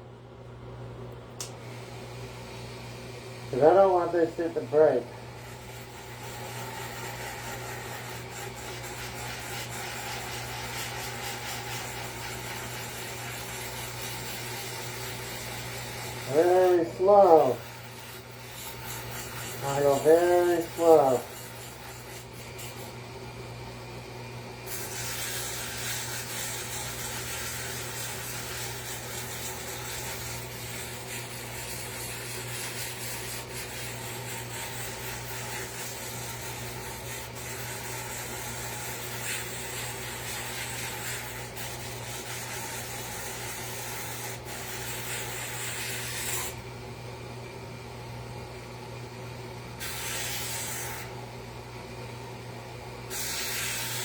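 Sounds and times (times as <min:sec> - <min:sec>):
abrasive bit sanding wood: 0:03.5 - 0:22.8, 0:24.7 - 0:46.6
power tool motor humming: 0:03.6 - 0:23.0, 0:24.7 - 0:46.6.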